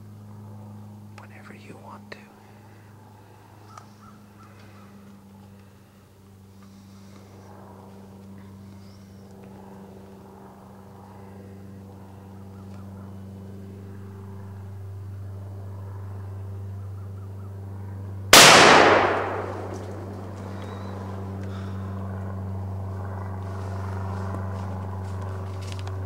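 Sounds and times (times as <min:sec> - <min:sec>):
steady low hum: 0:00.0 - 0:26.0
loud gunshot: 0:18.3 - 0:19.9.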